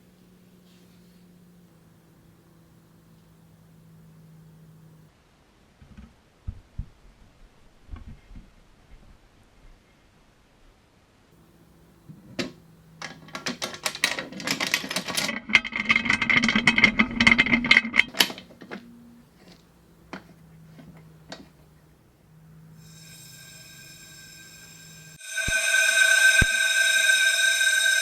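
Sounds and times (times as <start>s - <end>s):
metallic clicks and clatter: 12.4s - 21.5s
air hissing: 22.7s - 28.0s.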